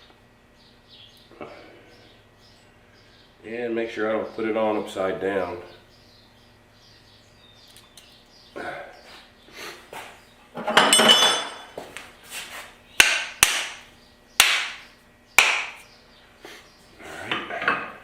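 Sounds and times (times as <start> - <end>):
tools clattering on workbench: 10.6 - 11.8, 17.3 - 18.0.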